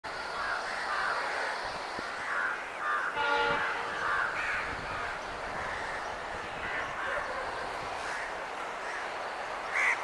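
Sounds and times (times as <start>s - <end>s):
crows cawing: 0.3s - 1.6s, 2.2s - 9.1s, 9.7s - 10.0s
locomotive horn blast: 3.2s - 4.2s.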